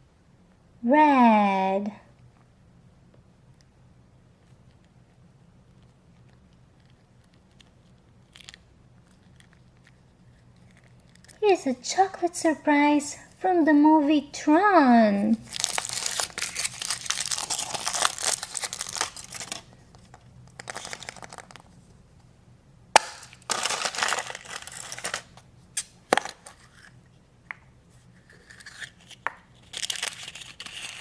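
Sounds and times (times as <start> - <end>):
foil wrapper crinkling and tearing: 6.8 - 11.4, 15.4 - 21.7, 23.0 - 25.4, 28.3 - 31.0.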